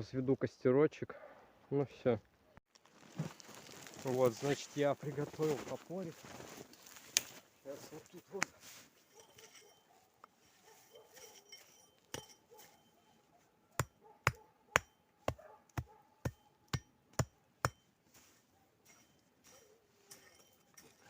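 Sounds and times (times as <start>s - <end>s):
hatchet striking: 11.2s - 12.4s, 13.8s - 17.9s.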